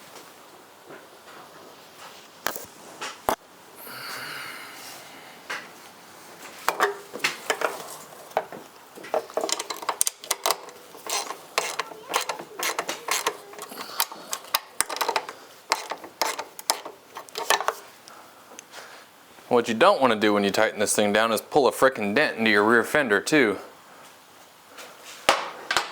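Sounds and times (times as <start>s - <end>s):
ratchet wrench clicking: 9.2s - 17.8s.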